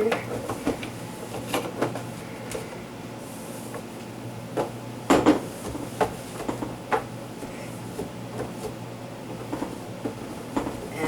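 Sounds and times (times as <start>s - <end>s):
knocks on plastic fridge shelves: 4.6s - 7.1s.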